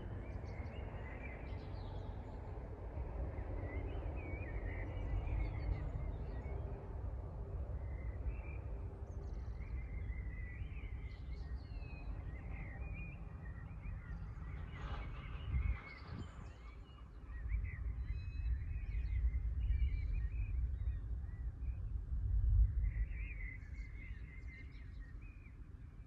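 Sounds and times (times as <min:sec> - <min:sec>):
small birds chirping and singing: 0:07.7 - 0:26.0.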